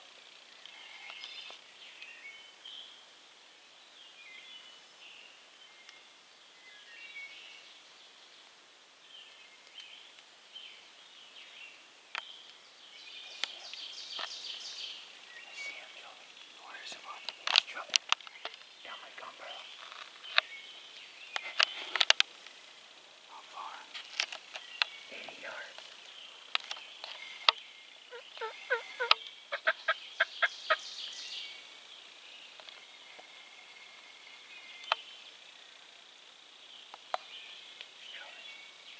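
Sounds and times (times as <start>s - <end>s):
songbirds singing and chirping: 0.0s - 38.9s
wild turkey calling: 27.0s - 31.7s.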